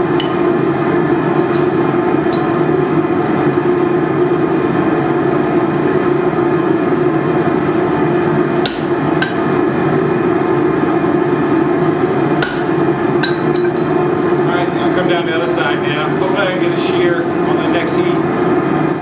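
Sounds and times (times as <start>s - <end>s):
loud steady roar: 0.0s - 19.0s
hammer striking steel: 0.2s - 0.5s, 2.3s - 2.6s, 8.6s - 9.4s, 12.4s - 14.0s.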